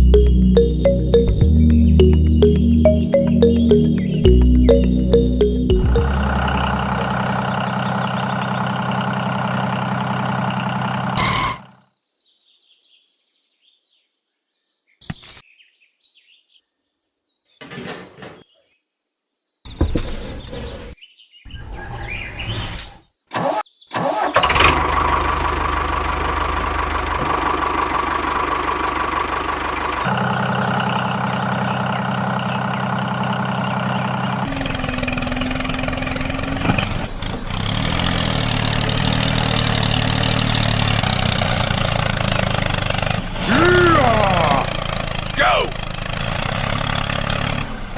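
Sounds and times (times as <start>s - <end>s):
small tractor engine running: 6.0s - 11.2s, 24.4s - 43.4s, 44.6s - 47.9s.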